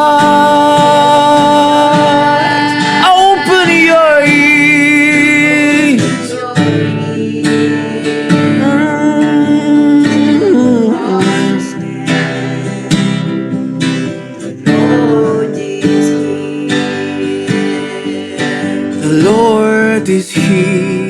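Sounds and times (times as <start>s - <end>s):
wordless vocal phrases: 0.0s - 13.3s
gospel song with strummed guitar: 0.0s - 21.0s.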